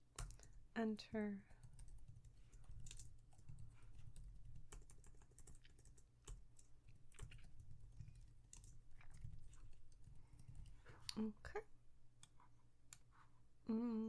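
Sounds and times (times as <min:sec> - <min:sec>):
faint computer keyboard typing: 0:00.1 - 0:11.2.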